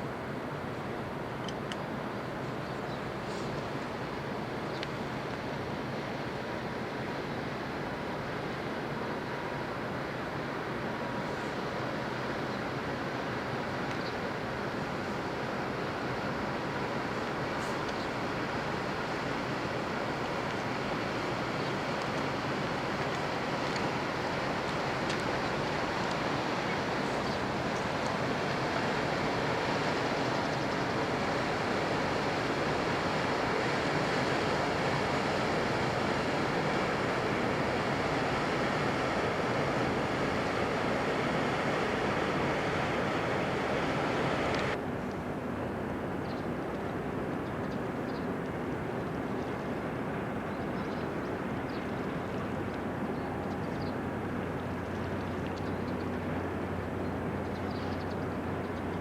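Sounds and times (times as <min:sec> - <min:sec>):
water: 0:00.0 - 0:59.0
wind: 0:00.0 - 0:59.0
steady low hum: 0:14.0 - 0:46.3.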